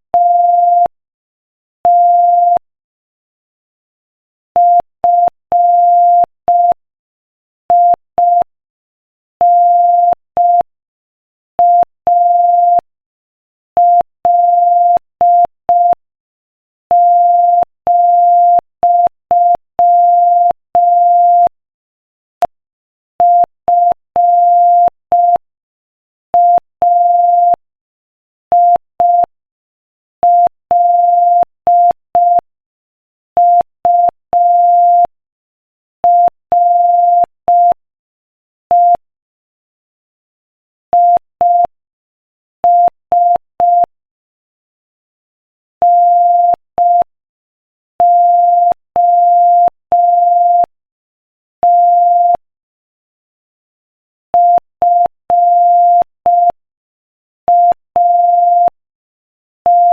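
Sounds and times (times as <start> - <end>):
morse code tone: 26.4 - 27.6, 30.2 - 32.5, 33.4 - 35.1, 36.0 - 37.8, 40.9 - 41.7, 42.6 - 43.9, 45.8 - 47.1, 48.0 - 50.7, 51.6 - 52.4, 54.3 - 56.6, 57.4 - 58.8, 59.6 - 59.9.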